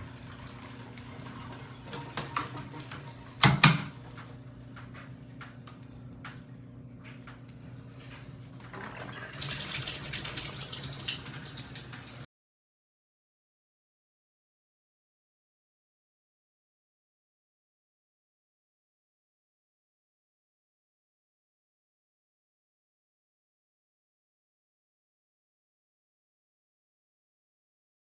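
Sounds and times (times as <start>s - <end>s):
shower water spraying: 9.0s - 12.3s
water dripping: 9.0s - 12.3s.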